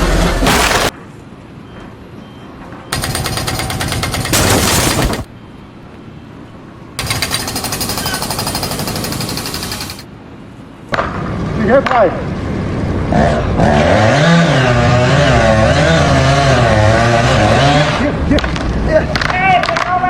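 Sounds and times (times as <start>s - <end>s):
jackhammer hammering: 3.0s - 5.2s.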